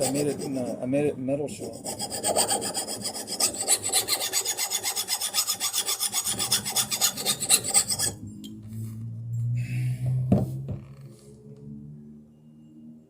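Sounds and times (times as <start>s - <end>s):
metal file rasping on blade: 0.0s - 8.2s.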